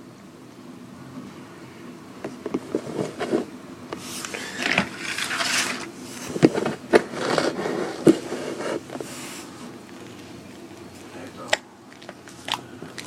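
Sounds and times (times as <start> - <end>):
slime scraping: 2.8 - 5.9, 6.5 - 10.2.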